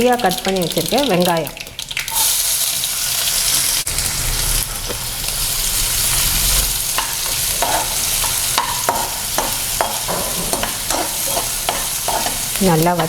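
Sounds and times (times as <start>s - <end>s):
onion sizzling in hot oil: 0.0s - 13.0s
spatula scraping a pan: 6.8s - 13.0s.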